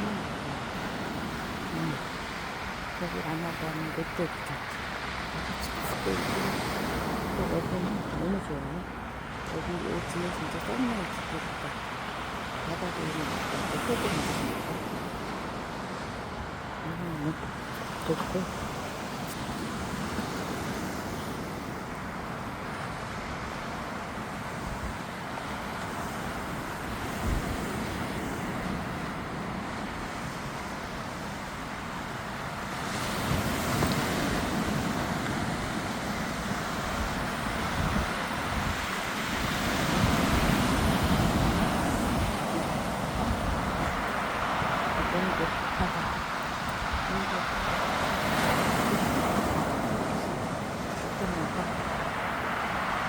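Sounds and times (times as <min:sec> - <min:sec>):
sea waves breaking on beach: 0:00.0 - 0:53.0
wind buffeting microphone: 0:32.9 - 0:52.1.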